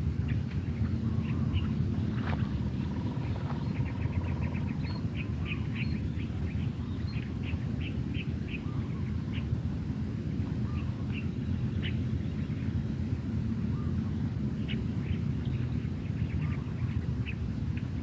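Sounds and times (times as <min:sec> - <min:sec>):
birds chirping: 0:00.0 - 0:18.0
low background rumble: 0:00.0 - 0:18.0.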